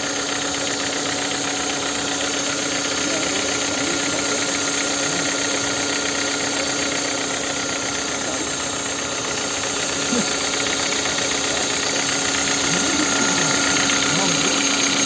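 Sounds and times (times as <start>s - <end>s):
engine running with steady knock: 0.0s - 15.0s.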